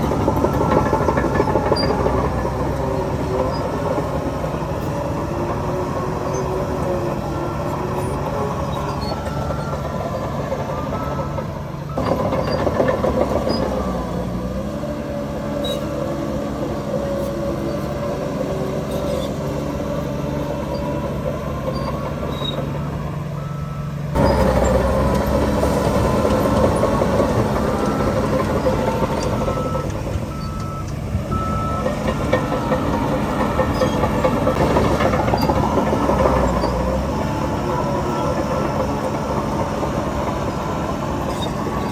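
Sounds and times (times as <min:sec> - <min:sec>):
heavy diesel engines running: 0:00.0 - 0:41.9.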